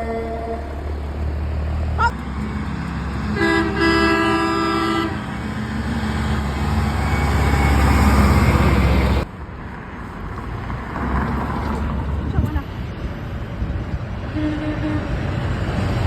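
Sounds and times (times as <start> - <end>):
truck horn: 0.0 - 0.8, 3.2 - 6.2, 14.3 - 15.3
traffic noise: 0.0 - 16.0
truck passing close by: 0.0 - 16.0.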